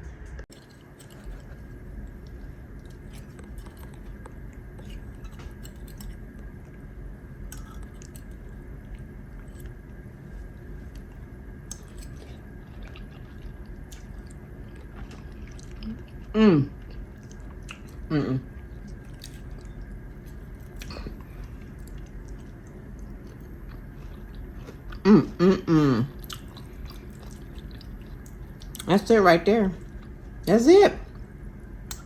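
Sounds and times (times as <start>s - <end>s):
low room hum: 0.0s - 32.0s
person chewing and smacking: 0.1s - 6.8s, 7.4s - 25.4s, 26.1s - 29.0s.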